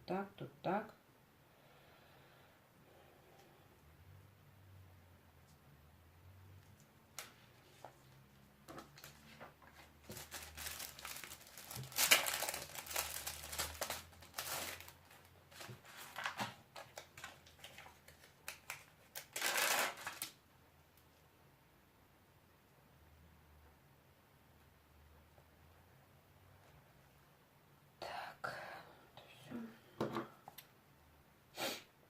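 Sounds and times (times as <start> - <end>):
craft materials crinkling: 8.7 - 20.4.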